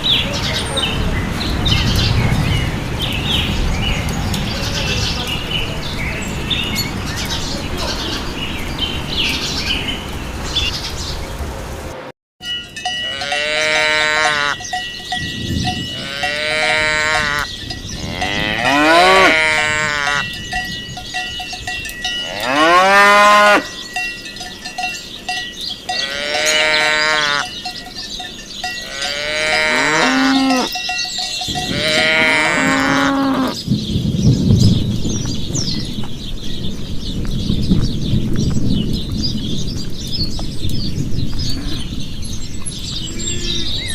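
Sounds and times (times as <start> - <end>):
cowbells ringing: 12.4 - 33.6
cattle mooing: 13.1 - 14.6, 15.9 - 20.4, 22.2 - 23.7, 26.0 - 27.6, 28.8 - 30.8, 31.6 - 33.6.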